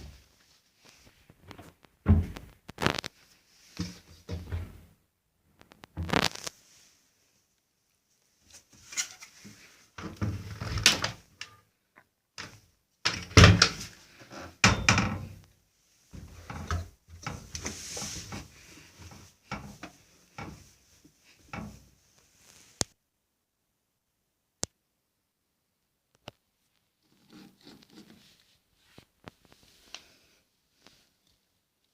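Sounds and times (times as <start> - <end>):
washing machine door opening and shutting: 4.3 - 4.8, 13.1 - 13.9, 14.6 - 15.4.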